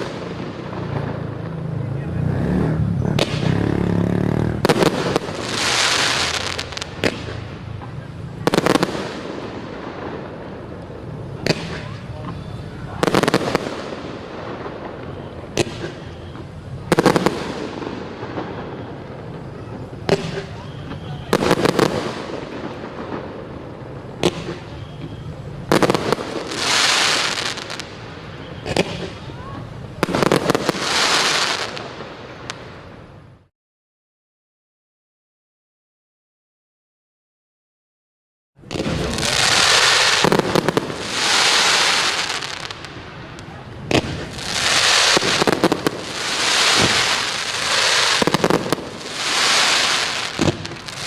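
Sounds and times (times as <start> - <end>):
fireworks bangs: 0.0 - 33.5, 38.6 - 51.0
firework hiss: 4.6 - 32.9, 38.7 - 51.0.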